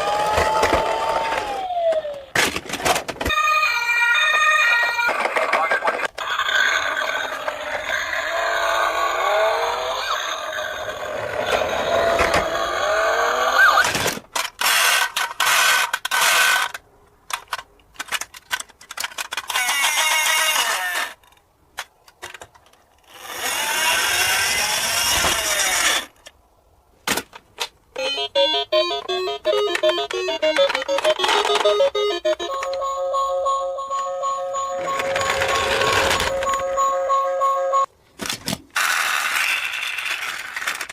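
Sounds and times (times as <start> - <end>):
music: 28.0 - 34.7
quick repeating tune: 28.0 - 37.9.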